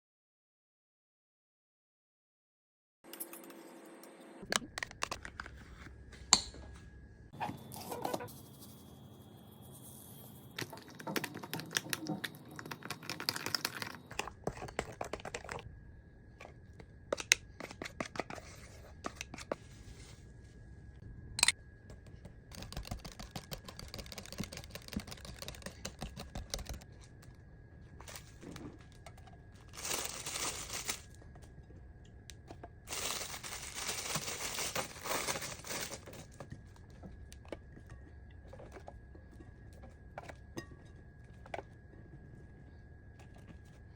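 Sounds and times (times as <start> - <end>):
packaging crinkling and tearing: 29.6 - 31.2, 32.9 - 36.4.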